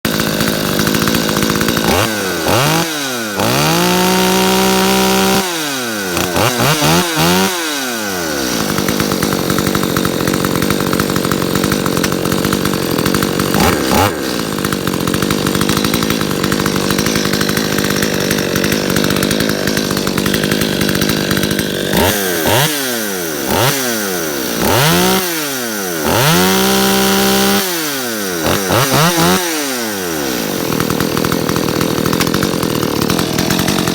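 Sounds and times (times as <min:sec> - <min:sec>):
chainsaw engine revving and idling: 0:00.0 - 0:33.9.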